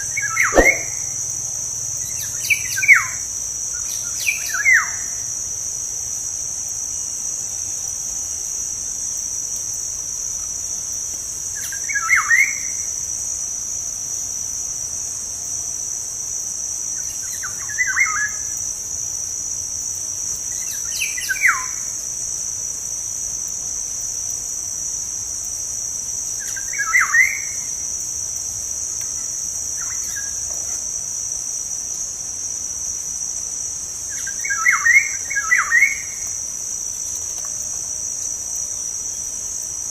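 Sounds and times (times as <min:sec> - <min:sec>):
high-pitched insect drone: 0:00.0 - 0:07.8, 0:23.1 - 0:39.9
bird fluty whistled calls: 0:00.1 - 0:01.1.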